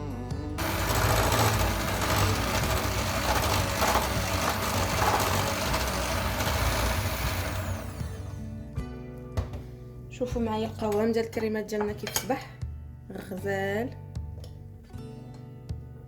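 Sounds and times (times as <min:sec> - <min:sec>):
electric mixer running: 0:00.6 - 0:08.4.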